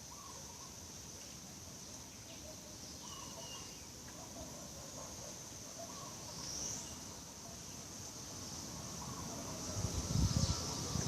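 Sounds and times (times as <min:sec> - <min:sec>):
birds calling: 0:00.0 - 0:00.8, 0:02.0 - 0:07.9
insect chirring: 0:00.0 - 0:11.0.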